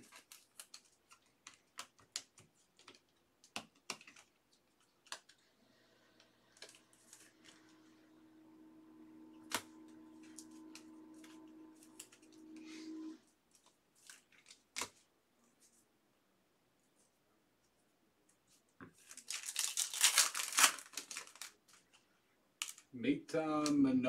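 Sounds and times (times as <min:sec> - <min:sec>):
steady low hum: 0:06.1 - 0:13.2.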